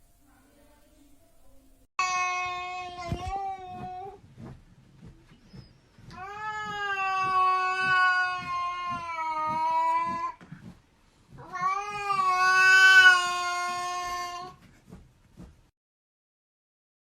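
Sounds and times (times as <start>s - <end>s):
cat yowling: 6.2s - 10.4s, 11.4s - 14.6s.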